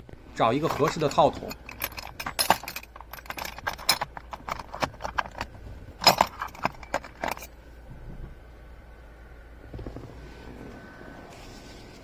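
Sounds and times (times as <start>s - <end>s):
metal sockets clinking: 0.5s - 7.6s.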